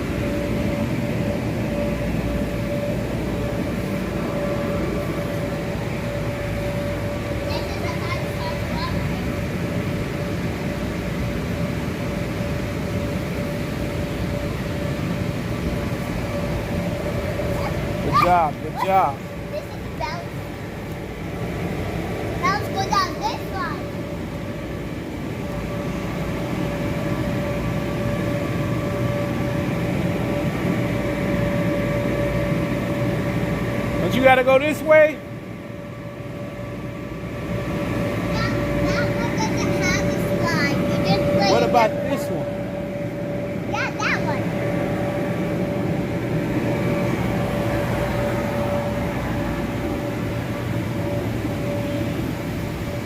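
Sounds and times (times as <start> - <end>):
air blowers humming: 0.0 - 53.0.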